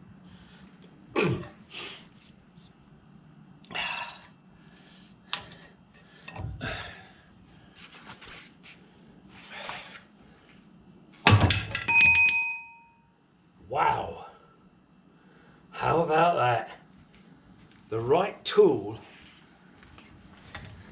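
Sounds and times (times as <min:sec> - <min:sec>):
ringing metal clang: 0:11.3 - 0:13.1.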